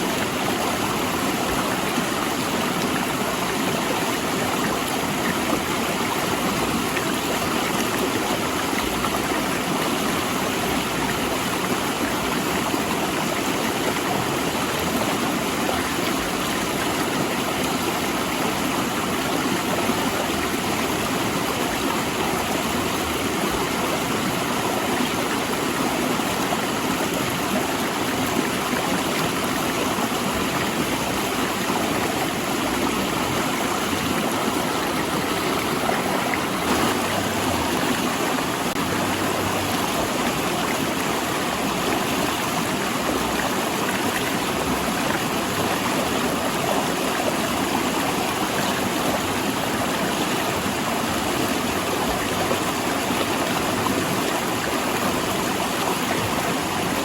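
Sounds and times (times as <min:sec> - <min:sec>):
river rushing over rocks: 0:00.0 - 0:57.0.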